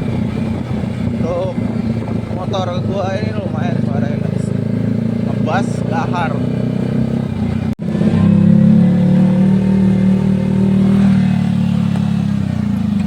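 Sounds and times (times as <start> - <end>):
motorcycle engine running: 0.0 - 13.0.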